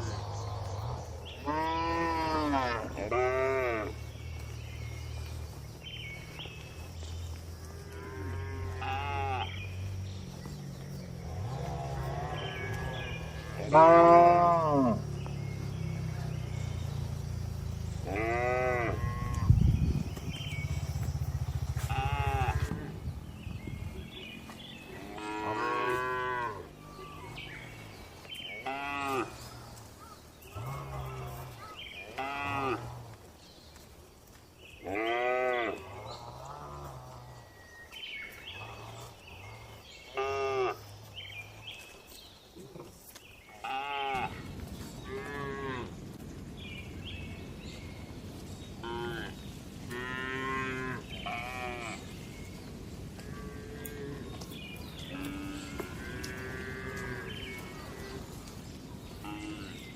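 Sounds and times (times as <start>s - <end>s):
cows mooing: 0.0s - 4.4s, 7.6s - 9.7s, 11.2s - 16.8s, 17.8s - 19.6s, 20.5s - 23.0s, 24.7s - 27.7s, 28.6s - 29.7s, 30.5s - 33.2s, 34.8s - 37.4s, 43.6s - 44.4s, 45.0s - 45.9s, 48.8s - 52.2s, 53.2s - 58.6s, 59.2s - 59.9s
low rumble: 19.0s - 25.1s.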